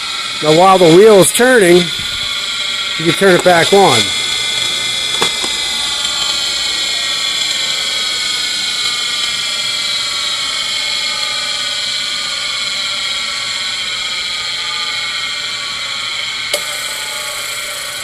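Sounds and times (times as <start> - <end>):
grinder motor whine winding down: 0.0 - 18.0
motor contacts clicking off: 3.4 - 6.5, 16.5 - 18.0.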